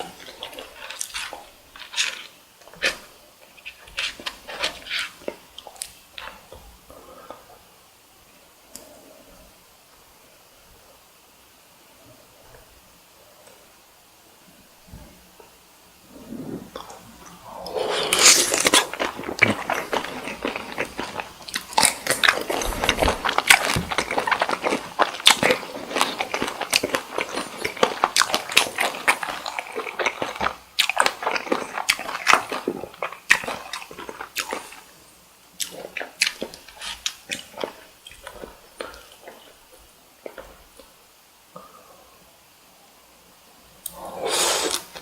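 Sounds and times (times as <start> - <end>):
chewing with mouth clicks: 0.0 - 6.4, 16.7 - 34.9, 35.6 - 39.6.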